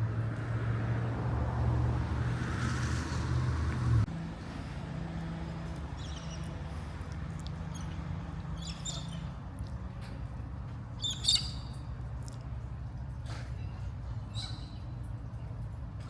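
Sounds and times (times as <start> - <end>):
vehicle engine droning: 0.0 - 16.0
birds chirping: 6.0 - 6.9, 7.5 - 9.4, 10.9 - 12.0, 13.0 - 15.7.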